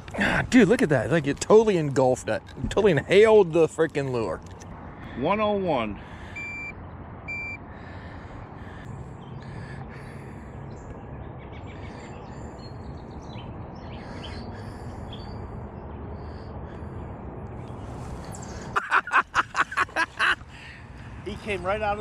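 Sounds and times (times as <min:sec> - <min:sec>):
small birds chirping: 0:08.6 - 0:18.7.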